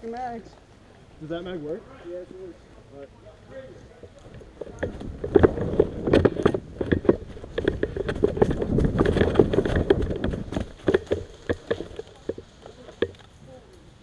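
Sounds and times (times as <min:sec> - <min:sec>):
knocks and rustling near microphone: 0:04.0 - 0:13.2.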